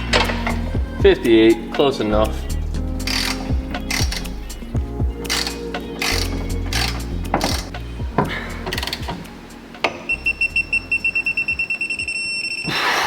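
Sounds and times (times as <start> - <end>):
wrench ratchet clicks: 3.0 - 4.4, 5.3 - 7.8
torque wrench rapid beeps: 10.1 - 12.7.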